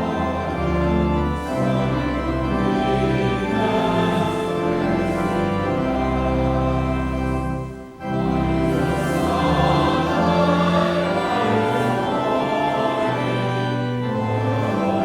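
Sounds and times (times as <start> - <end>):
choir singing a hymn: 0.0 - 15.0
organ tones: 0.0 - 15.0.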